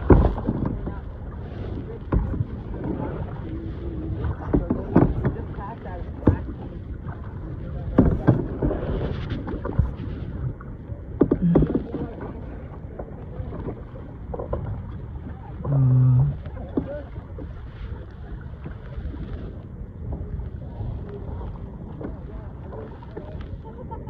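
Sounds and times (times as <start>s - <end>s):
water sloshing around kayak: 0.0s - 24.0s
wind on microphone: 0.0s - 24.0s
low voice-like sound: 11.4s - 12.7s, 15.4s - 17.2s.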